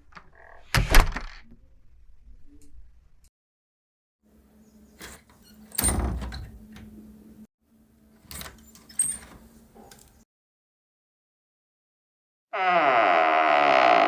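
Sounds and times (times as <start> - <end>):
door shutting with a thud: 5.0 - 6.9.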